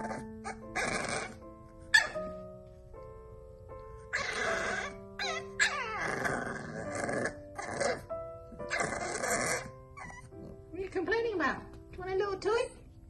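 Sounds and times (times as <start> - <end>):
puppy grumbling and whining: 0.0 - 2.3, 4.0 - 10.7
background music: 0.0 - 13.0.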